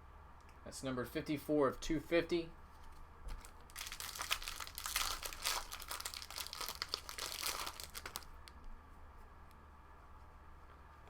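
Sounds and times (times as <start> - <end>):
foil wrapper crinkling and tearing: 3.3 - 8.6.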